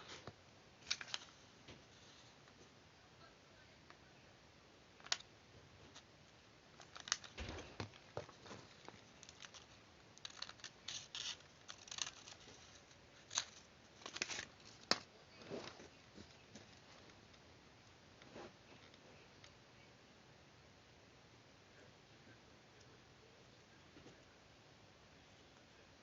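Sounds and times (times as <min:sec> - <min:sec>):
paper rustling: 0:00.0 - 0:02.4, 0:06.8 - 0:17.2
scissors snipping paper: 0:08.3 - 0:15.1.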